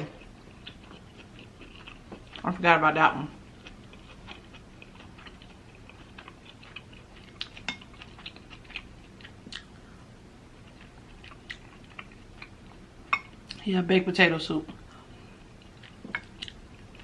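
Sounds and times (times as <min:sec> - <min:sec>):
chewing: 0:00.0 - 0:02.6, 0:03.4 - 0:09.8, 0:10.6 - 0:13.6, 0:14.7 - 0:17.0.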